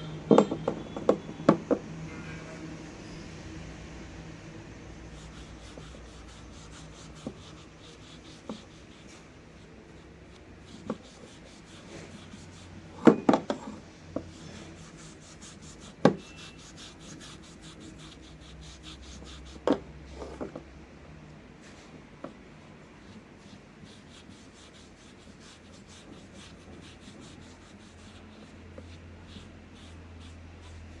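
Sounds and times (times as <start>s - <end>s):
abrasive sanding strokes: 5.0s - 9.7s, 10.6s - 12.8s, 14.3s - 19.6s, 23.5s - 31.0s.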